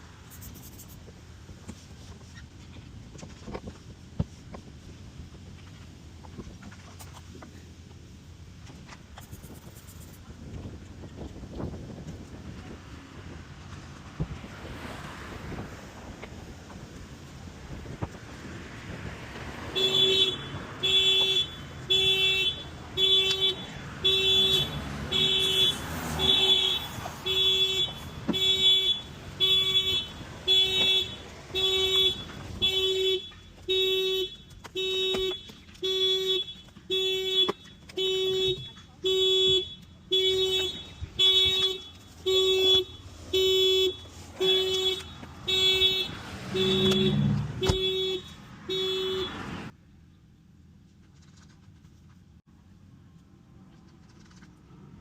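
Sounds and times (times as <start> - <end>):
car alarm horn pulses: 19.7 - 49.6.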